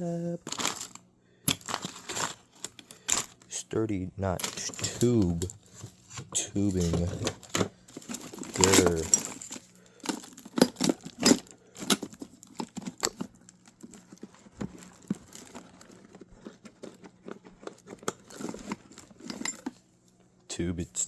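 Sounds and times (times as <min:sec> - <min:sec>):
metal tools clicking and rattling: 0:00.4 - 0:03.4, 0:04.4 - 0:13.3, 0:16.8 - 0:19.8.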